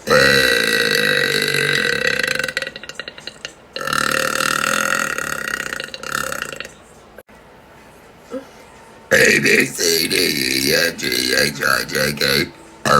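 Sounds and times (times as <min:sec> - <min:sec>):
woman belching: 0:00.1 - 0:06.8.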